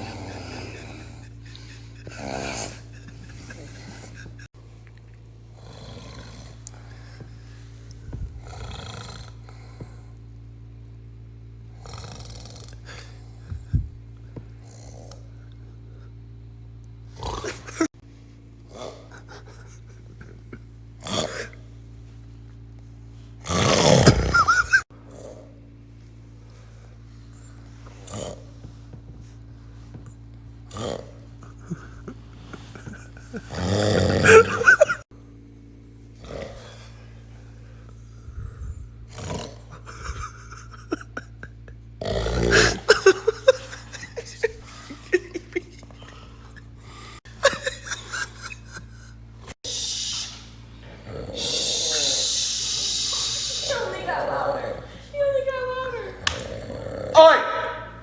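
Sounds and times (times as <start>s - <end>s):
man snoring: 0.0s - 4.2s, 5.5s - 7.0s, 8.3s - 10.1s, 11.7s - 13.5s, 14.6s - 15.3s, 23.4s - 24.4s, 30.6s - 35.0s, 38.4s - 39.8s, 42.0s - 43.4s, 50.9s - 53.8s, 56.4s - 57.2s.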